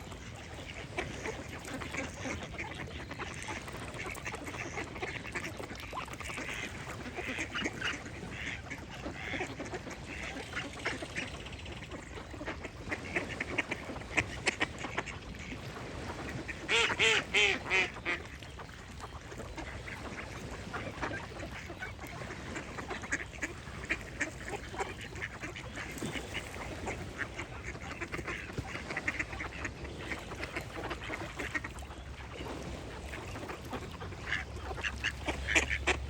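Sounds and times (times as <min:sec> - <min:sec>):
duck quacking: 0:06.4 - 0:11.0, 0:16.7 - 0:18.2, 0:19.6 - 0:31.8, 0:33.6 - 0:36.0.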